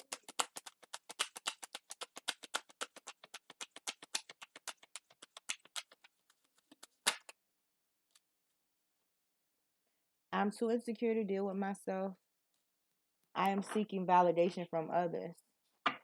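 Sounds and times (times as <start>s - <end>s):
cards being shuffled: 0.1s - 7.4s.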